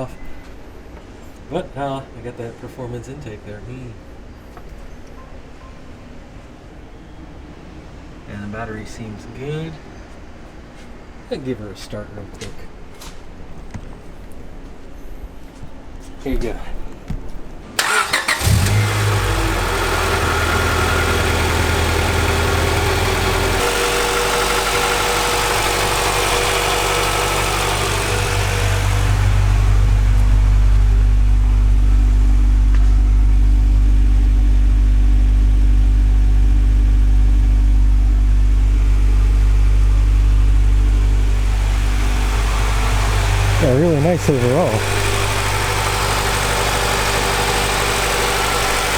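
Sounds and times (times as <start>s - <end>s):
car engine starting and idling: 17.7s - 48.9s.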